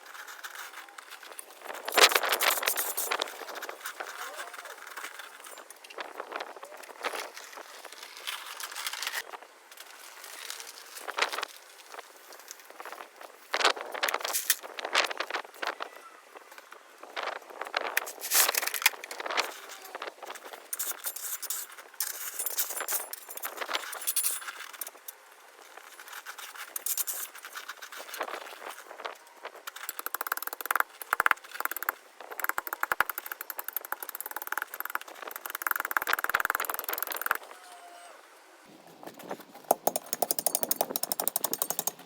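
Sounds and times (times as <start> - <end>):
shovel scraping stony ground: 0.0 - 6.1.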